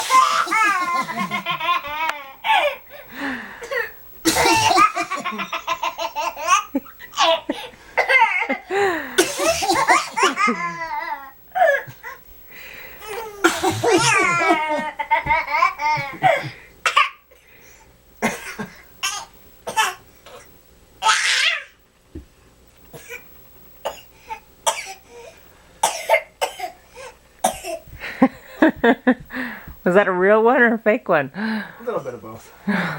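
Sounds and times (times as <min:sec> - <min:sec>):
playful fake coughs: 0:00.0 - 0:01.1, 0:03.7 - 0:05.3, 0:09.2 - 0:10.6, 0:13.4 - 0:14.6, 0:16.0 - 0:17.2, 0:27.4 - 0:27.8
baby belly-laughing: 0:00.0 - 0:02.8, 0:13.0 - 0:16.4.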